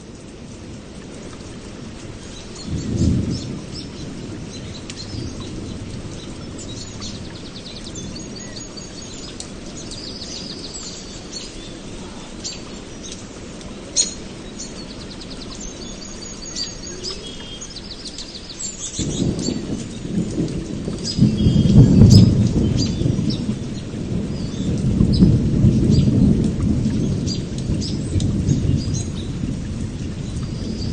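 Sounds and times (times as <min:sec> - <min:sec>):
steady rain: 0:00.0 - 0:30.9
rolling thunder: 0:01.8 - 0:30.9
birds chirping: 0:02.2 - 0:26.3.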